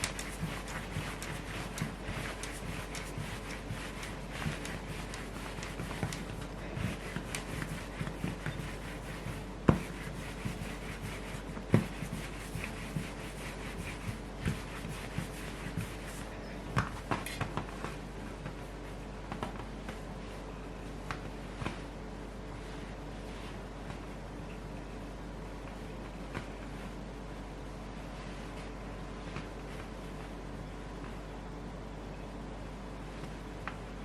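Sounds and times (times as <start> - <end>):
hands rubbing bread dough: 0.0 - 24.2, 27.8 - 30.4
faint steady hum: 0.0 - 34.0.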